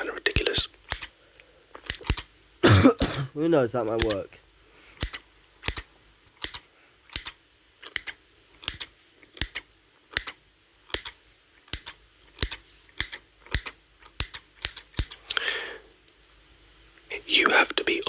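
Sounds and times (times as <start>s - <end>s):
scissors snipping: 0.9s - 1.1s, 1.8s - 2.3s, 4.0s - 4.2s, 5.0s - 15.2s
soft breathy sound: 15.2s - 16.0s.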